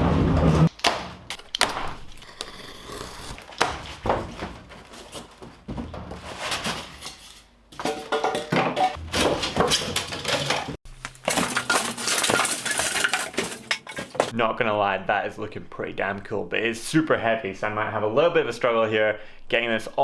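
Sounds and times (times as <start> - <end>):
knocks and clatters of unboxing: 3.4 - 14.4.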